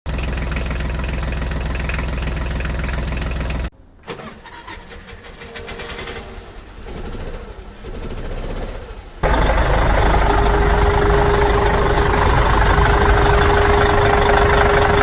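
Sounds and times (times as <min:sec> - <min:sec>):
engine running loud: 0:05.9 - 0:15.0.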